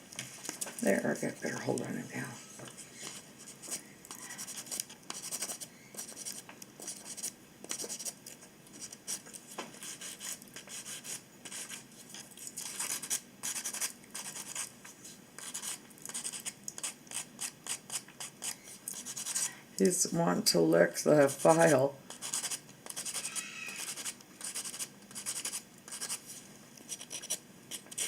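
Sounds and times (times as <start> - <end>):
nail file rasping on beak: 21.5 - 26.2.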